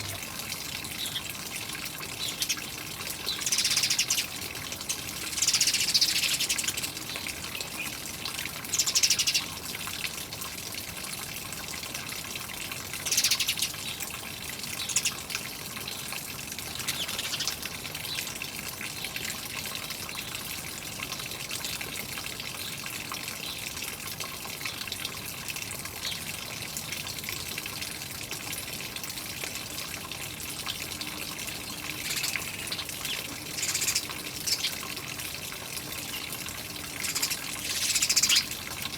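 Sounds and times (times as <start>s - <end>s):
water trickling: 0.0s - 38.9s
birds chirping: 0.9s - 8.0s, 13.1s - 14.0s, 14.8s - 15.2s, 16.7s - 17.6s, 31.6s - 35.0s, 36.0s - 38.7s.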